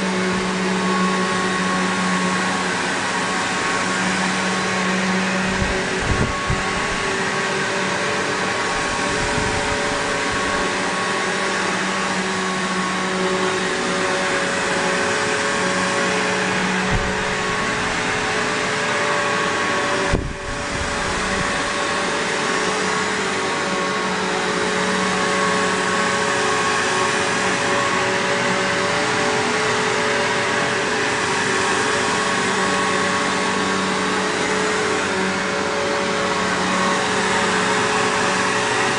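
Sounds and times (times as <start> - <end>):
upright vacuum cleaner running: 0.0 - 38.9
low thumps: 16.8 - 18.3.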